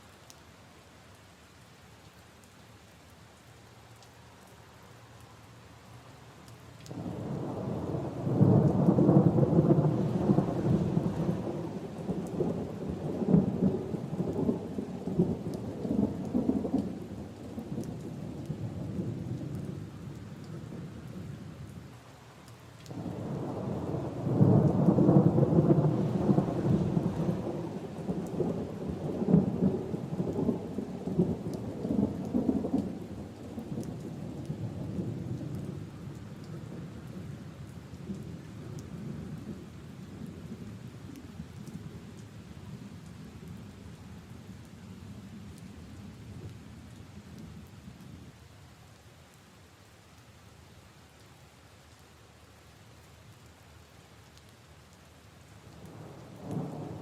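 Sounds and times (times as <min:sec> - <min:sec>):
steady rain: 0:00.0 - 0:57.0
thunder rolling: 0:07.0 - 0:16.9, 0:22.9 - 0:33.9.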